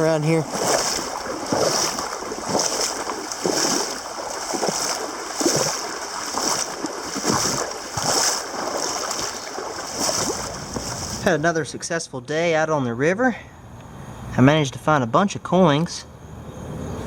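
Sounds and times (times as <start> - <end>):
footsteps splashing in shallow water: 0.0 - 11.4.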